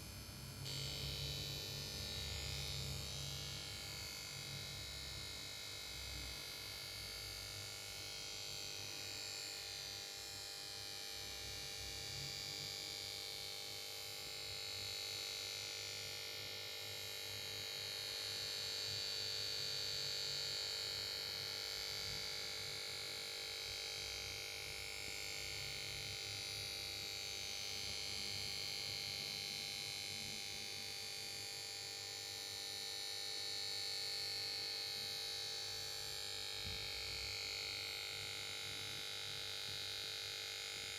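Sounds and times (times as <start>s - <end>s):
electrical whine and hum: 0.0s - 40.9s.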